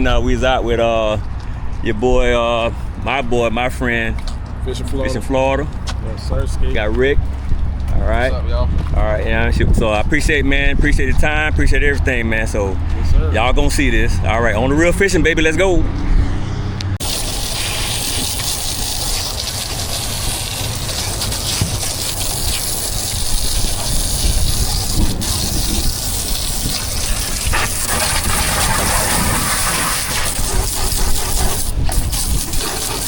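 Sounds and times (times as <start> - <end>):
wind noise: 6.4 - 33.0
water rushing: 17.0 - 31.6.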